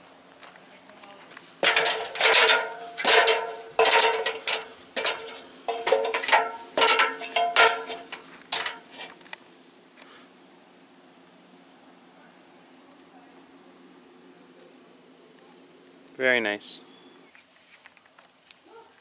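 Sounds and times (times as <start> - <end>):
sharp metallic clanks: 1.6 - 9.2.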